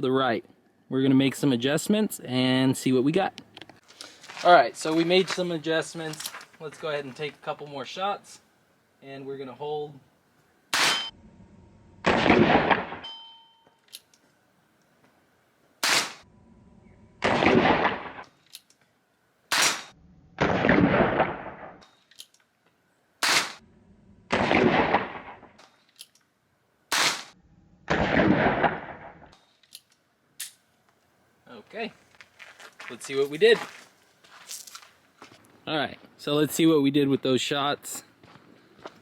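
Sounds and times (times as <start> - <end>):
gunshot cracks: 10.7 - 11.1, 12.0 - 13.1, 15.8 - 16.2, 17.2 - 18.2, 19.5 - 21.8, 23.2 - 23.6, 24.3 - 25.5, 26.9 - 29.3.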